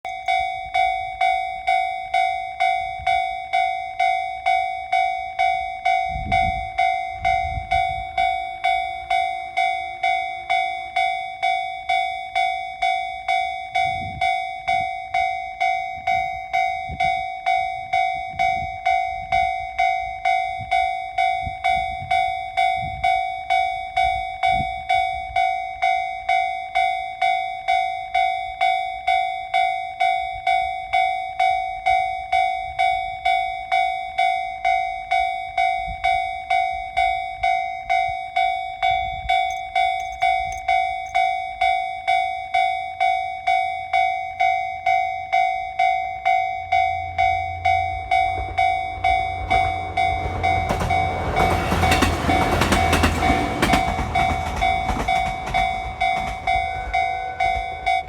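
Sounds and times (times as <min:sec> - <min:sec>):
level crossing bell ringing: 0:36.6 - 0:58.0
low rumbles: 0:46.8 - 0:58.0.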